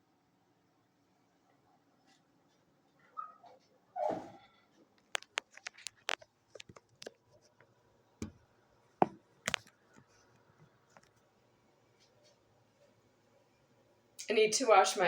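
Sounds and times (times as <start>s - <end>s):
light clicks and taps: 5.0s - 8.4s.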